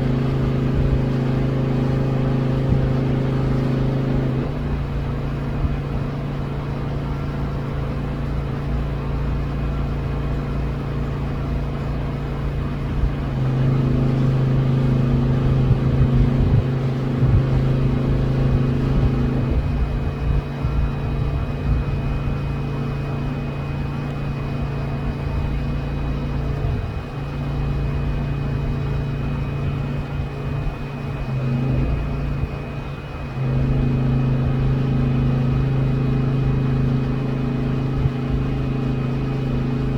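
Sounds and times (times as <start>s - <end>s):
engine humming at idle: 0.0s - 39.9s.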